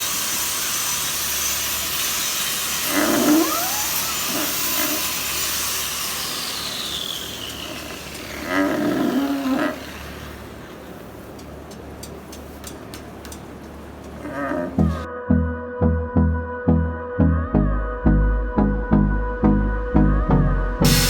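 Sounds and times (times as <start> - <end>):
steady high hiss: 0.0 - 14.2
cow mooing: 2.9 - 5.1, 8.3 - 10.2, 14.2 - 15.1.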